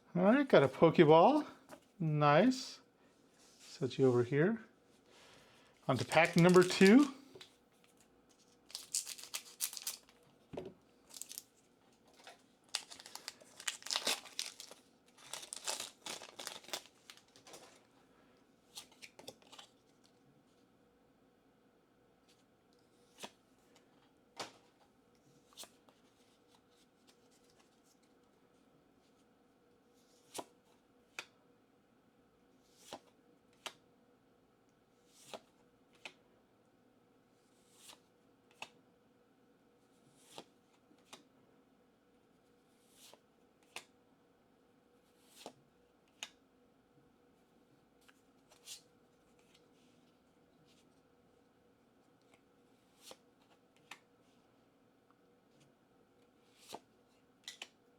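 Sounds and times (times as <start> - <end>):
faint steady hum: 0.0 - 57.9
trading cards snapping: 5.9 - 7.2.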